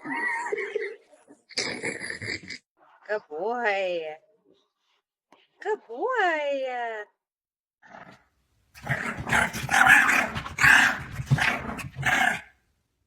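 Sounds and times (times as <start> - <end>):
dog growling: 8.8 - 12.5.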